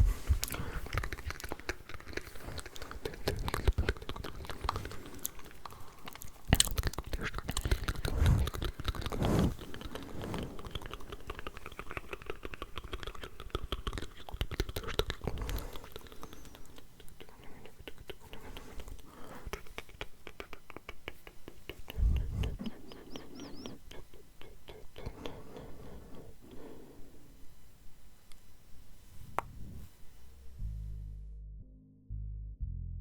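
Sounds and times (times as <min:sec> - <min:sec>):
mouth pops: 0:00.3 - 0:26.2
wet mouth clicks and smacks: 0:00.4 - 0:26.3.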